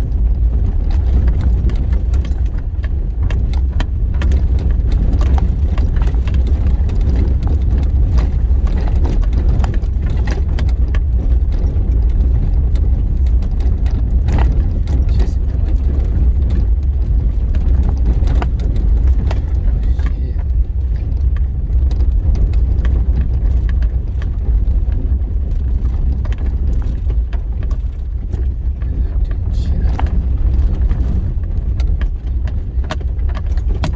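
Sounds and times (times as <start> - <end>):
rattles and knocks over bumps: 0.0 - 33.9
vehicle low rumble: 0.0 - 33.9.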